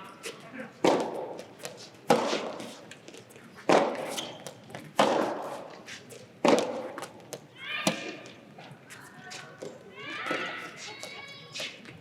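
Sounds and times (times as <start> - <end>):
tennis ball hit by racket: 0.8 - 1.4, 2.0 - 2.7, 3.7 - 5.6, 6.4 - 7.1.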